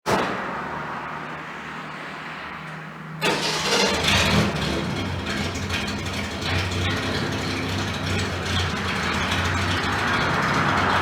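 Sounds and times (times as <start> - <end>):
engine running: 3.2 - 11.0.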